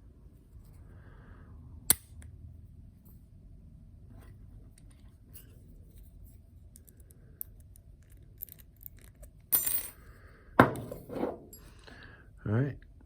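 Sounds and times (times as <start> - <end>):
metallic clicks and clinks: 6.8 - 10.0.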